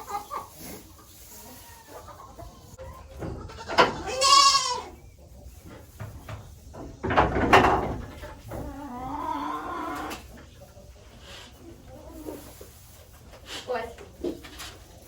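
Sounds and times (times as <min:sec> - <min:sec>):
goat bleating: 0:03.4 - 0:05.0.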